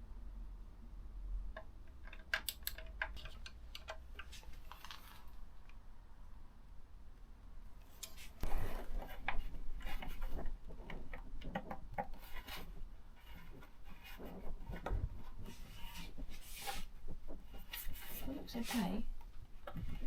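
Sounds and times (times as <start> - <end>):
clicks and knocks of parts: 1.5 - 5.8.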